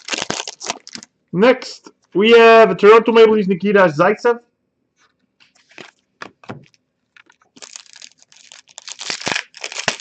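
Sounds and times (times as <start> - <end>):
cards and wrapper crinkling: 0.0 - 1.1, 5.4 - 10.0.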